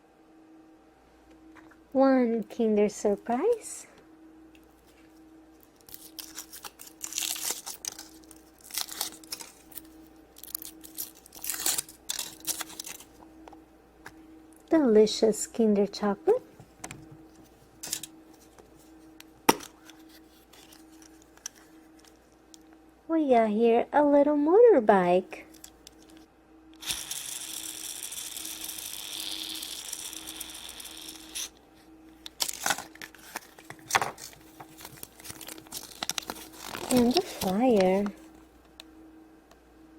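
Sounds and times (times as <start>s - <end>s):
foil wrapper tearing and crinkling: 5.8s - 13.2s, 32.3s - 38.2s
plastic toy ratcheting rattle: 26.8s - 31.5s.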